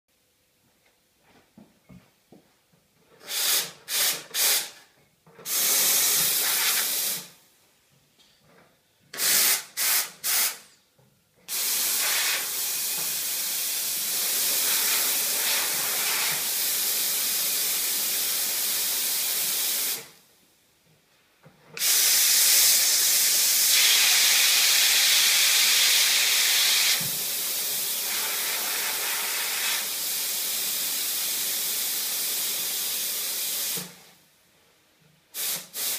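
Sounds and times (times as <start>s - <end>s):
espresso steam wand hissing: 3.2s - 4.7s, 21.8s - 27.1s.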